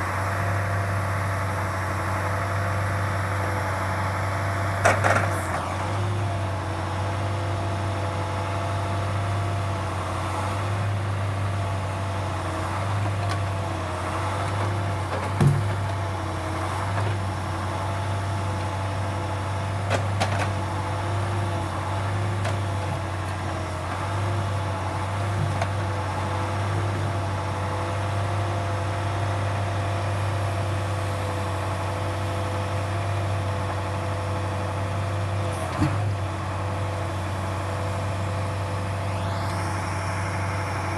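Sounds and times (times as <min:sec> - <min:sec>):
truck engine running: 0:33.8 - 0:40.9
hydraulic pump whine: 0:37.8 - 0:40.9.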